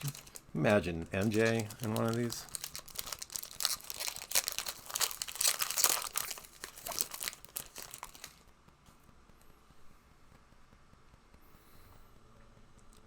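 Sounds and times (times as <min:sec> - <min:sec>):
wrapper tearing and crinkling: 0:00.0 - 0:08.4.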